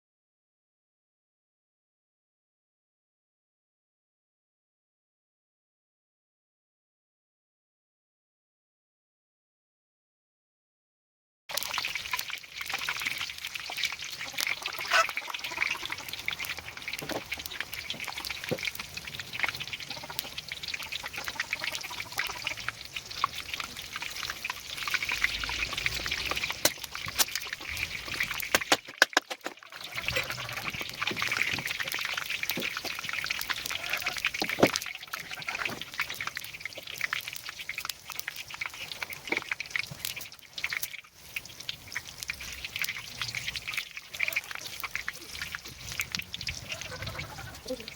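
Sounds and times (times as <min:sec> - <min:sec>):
hot oil sizzling and popping: 0:11.5 - 0:47.9.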